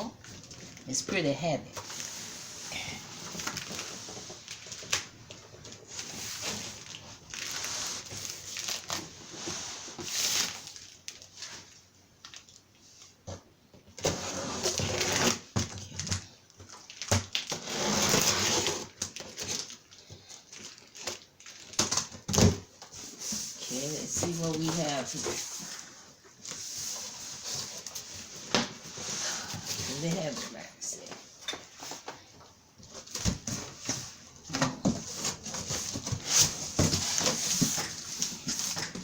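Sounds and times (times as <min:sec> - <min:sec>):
packaging rustling and scraping: 0:01.7 - 0:13.2, 0:14.0 - 0:39.0.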